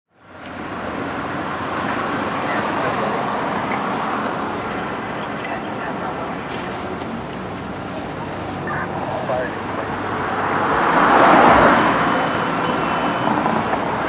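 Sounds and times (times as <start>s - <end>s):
road traffic rumble: 0.1s - 14.0s.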